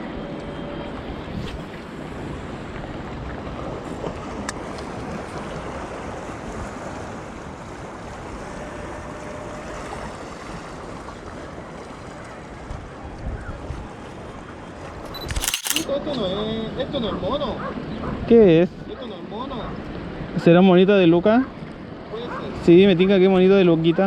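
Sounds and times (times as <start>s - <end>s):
sharp click: 15.0s - 15.9s.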